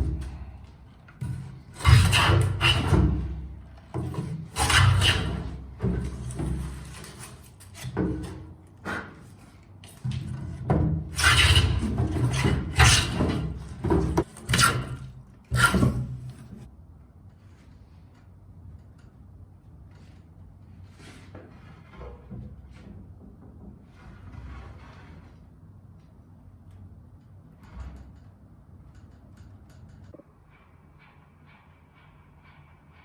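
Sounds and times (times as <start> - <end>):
hand tool working wood: 1.2 - 16.7.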